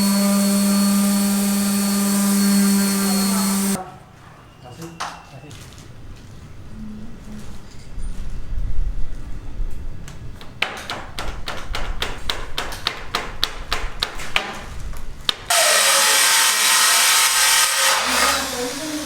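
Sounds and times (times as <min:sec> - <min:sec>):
power tool running: 0:00.0 - 0:03.8, 0:15.5 - 0:19.0.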